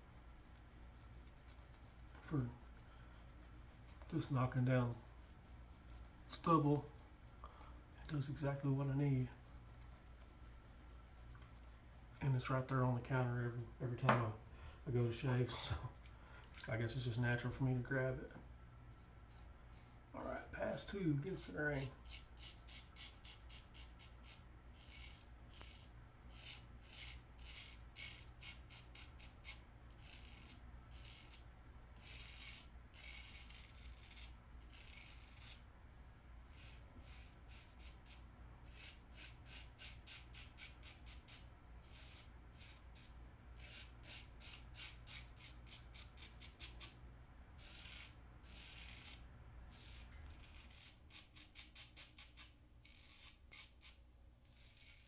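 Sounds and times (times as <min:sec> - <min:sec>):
razor scraping stubble: 0:18.9 - 0:35.7, 0:47.6 - 0:55.0.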